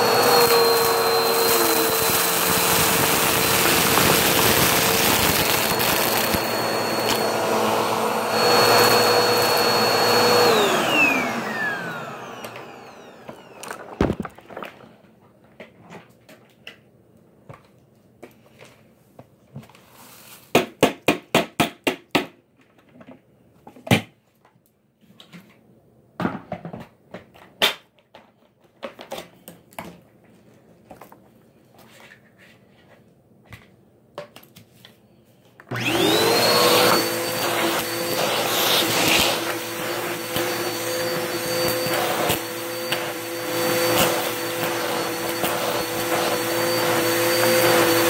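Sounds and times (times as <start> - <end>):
vacuum cleaner motor whine: 0.0 - 14.7, 35.7 - 48.0.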